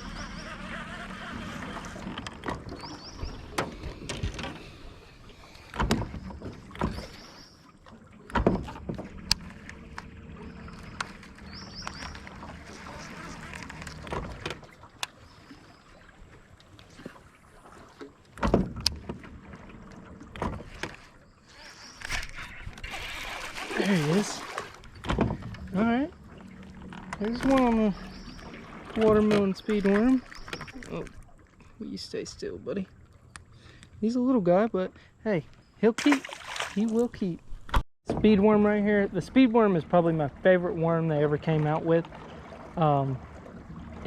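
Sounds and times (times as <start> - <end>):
faint outdoor background: 0.0 - 44.0.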